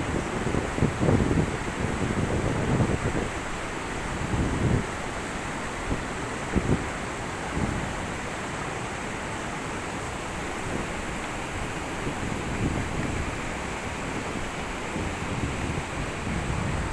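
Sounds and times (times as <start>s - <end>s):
wind buffeting microphone: 0.0s - 5.0s, 11.6s - 16.9s.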